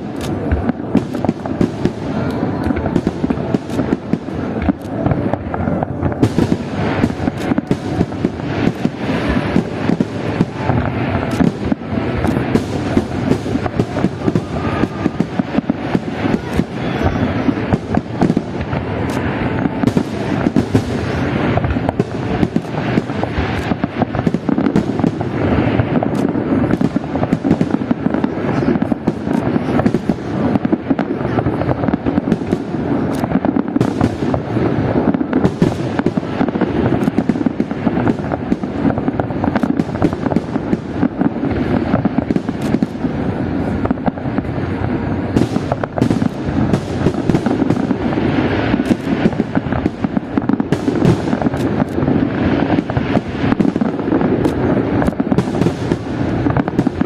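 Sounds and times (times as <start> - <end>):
fireworks bangs and crackling: 0.0 - 57.0.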